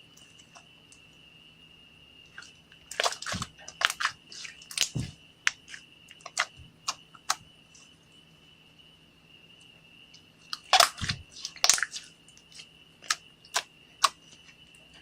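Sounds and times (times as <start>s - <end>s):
slime squishing with wet pops: 2.3s - 7.4s, 10.5s - 14.4s.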